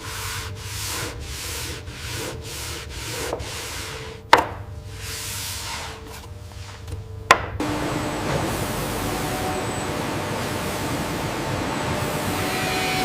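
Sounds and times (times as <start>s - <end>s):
wood being rubbed back and forth: 0.0s - 6.9s
steady low hum: 0.0s - 13.0s.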